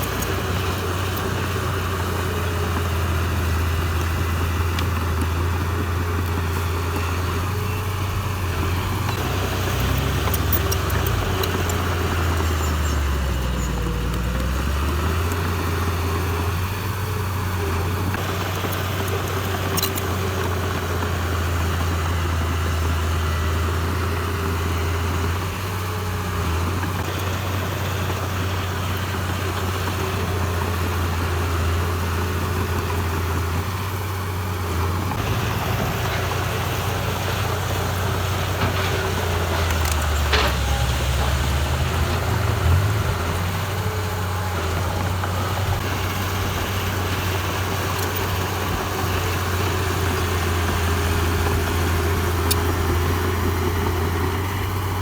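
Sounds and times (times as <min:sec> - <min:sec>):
diesel engine running: 0:00.0 - 0:55.0.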